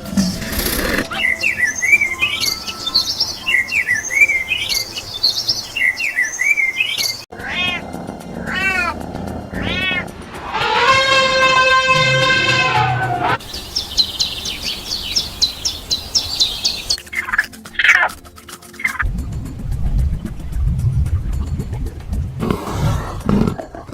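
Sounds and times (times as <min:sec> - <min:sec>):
high chirping: 0:01.0 - 0:07.3, 0:13.4 - 0:17.3
cat meowing: 0:07.4 - 0:07.8, 0:08.5 - 0:10.0
long held animal call: 0:07.4 - 0:17.0.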